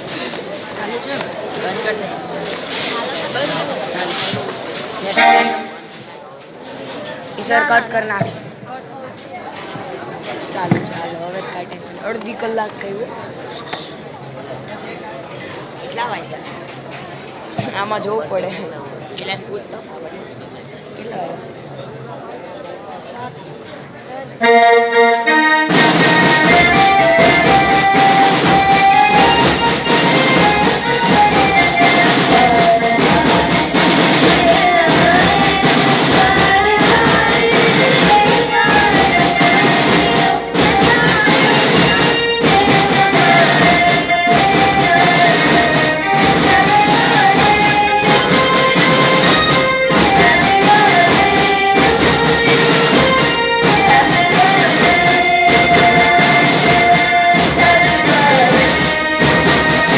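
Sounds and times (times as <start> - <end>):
instrumental music with beat: 5.1 - 5.9, 24.4 - 59.9.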